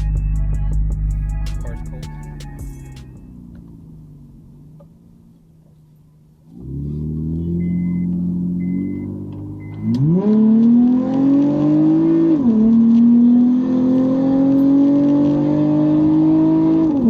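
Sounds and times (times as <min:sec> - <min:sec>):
car engine revving: 0:00.0 - 0:17.0
car warning chime beeping: 0:07.5 - 0:10.0.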